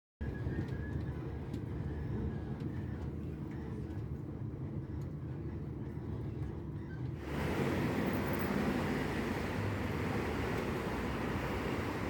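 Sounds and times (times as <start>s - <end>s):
train rumbling: 0.2s - 12.0s.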